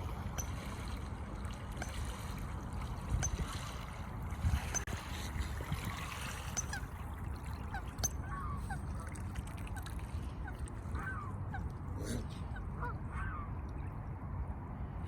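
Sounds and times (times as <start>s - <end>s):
waterfowl honking: 6.5s - 11.7s.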